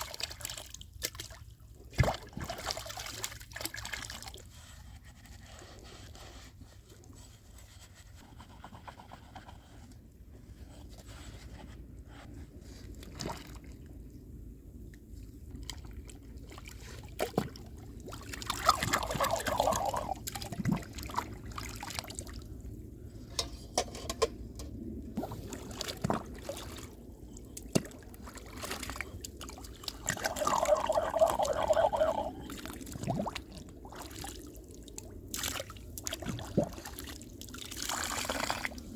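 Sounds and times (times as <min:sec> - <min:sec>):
liquid pouring: 0:18.6 - 0:20.2, 0:30.0 - 0:32.4.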